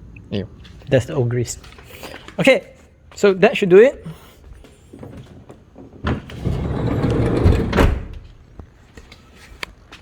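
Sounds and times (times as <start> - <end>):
door shutting with a thud: 5.9 - 8.4
sliding door motor running: 6.3 - 8.2.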